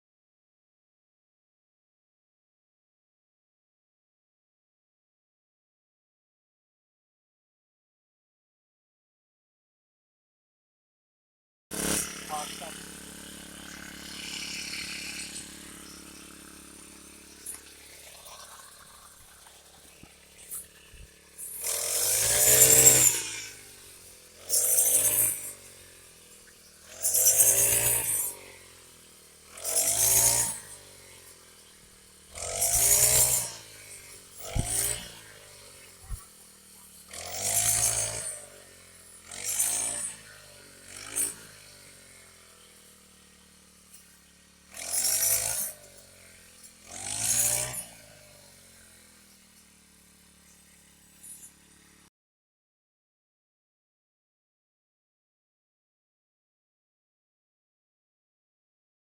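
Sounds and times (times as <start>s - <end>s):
harvesting machine engine surging: 11.7s - 38.3s.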